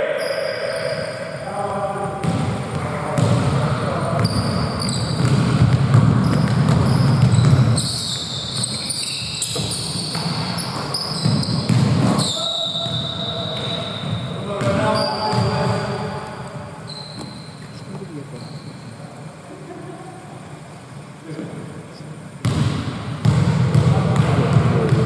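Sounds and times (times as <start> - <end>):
basketball bouncing: 2.2 - 15.9, 22.4 - 25.0
sneakers squeaking on floor: 2.2 - 19.0
players calling out: 6.2 - 16.3.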